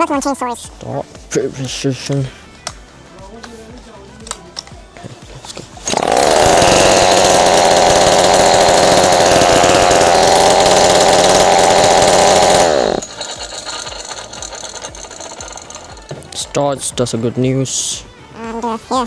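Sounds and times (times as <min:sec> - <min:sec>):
chainsaw engine running: 0:05.8 - 0:16.4.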